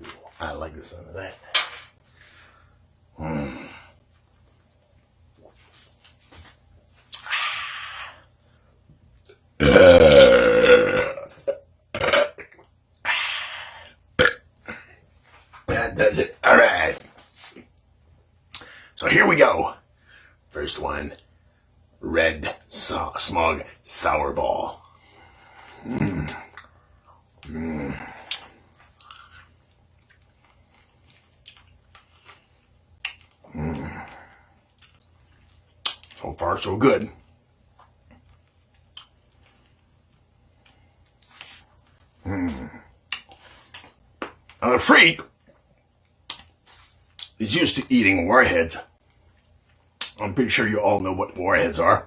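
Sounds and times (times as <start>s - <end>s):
man belching loudly: 9.6s - 12.4s, 14.2s - 14.4s
short low vocal sound: 42.2s - 42.8s.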